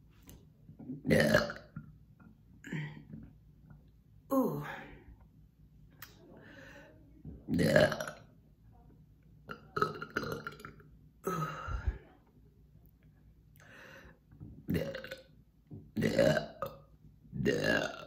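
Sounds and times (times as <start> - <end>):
woman burping: 0.8 - 1.9, 2.6 - 3.3, 7.5 - 8.3, 9.5 - 12.0, 14.7 - 15.3, 16.0 - 18.0.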